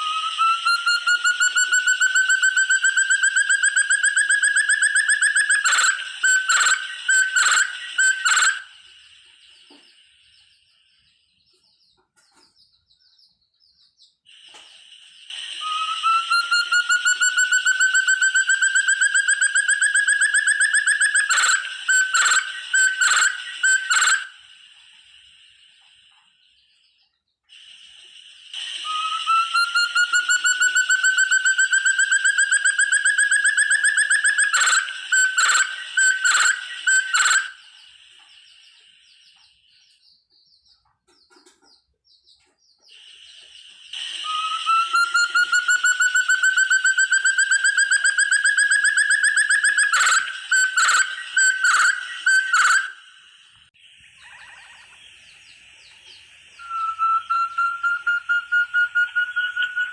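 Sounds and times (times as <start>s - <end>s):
partridge whistled call: 0.0s - 59.9s.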